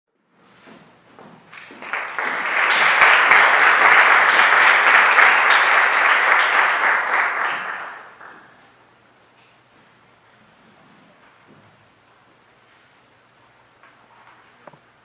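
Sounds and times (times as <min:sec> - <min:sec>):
audience applauding: 0:01.5 - 0:08.7.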